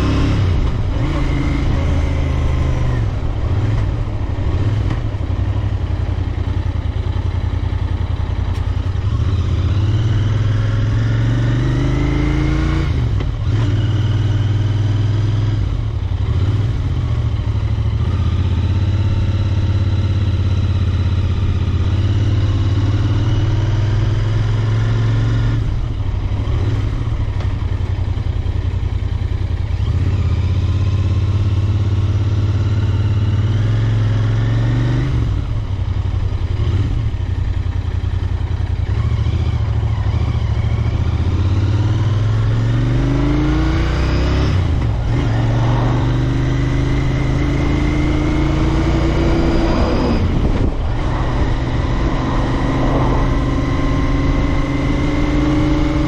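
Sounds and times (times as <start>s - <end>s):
motorcycle engine accelerating: 0.0s - 56.0s.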